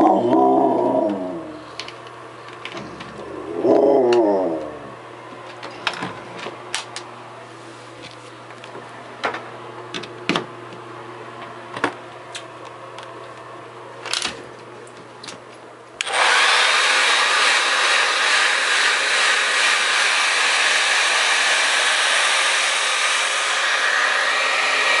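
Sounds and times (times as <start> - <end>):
hair dryer running: 0.0 - 7.6, 16.0 - 25.0
low steady hum: 0.0 - 16.0.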